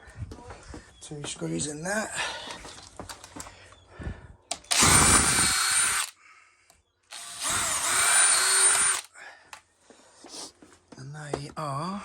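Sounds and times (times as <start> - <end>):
power drill driving screws: 4.5 - 6.1, 7.1 - 9.1.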